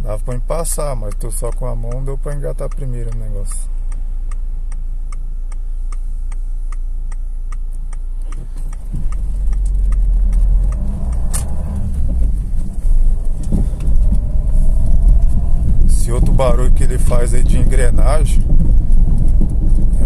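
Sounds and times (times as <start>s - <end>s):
car engine hum: 0.0s - 20.0s
road rumble: 0.0s - 20.0s
indicator relay ticking: 0.2s - 12.4s.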